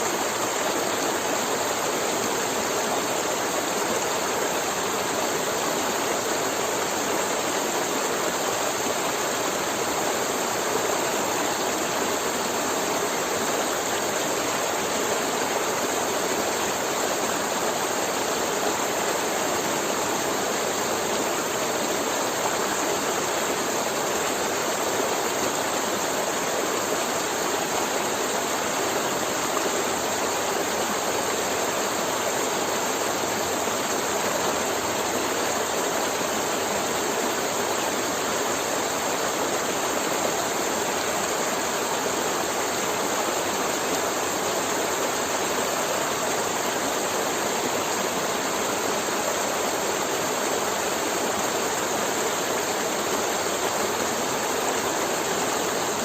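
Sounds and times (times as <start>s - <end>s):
river rushing over rocks: 0.0s - 56.0s.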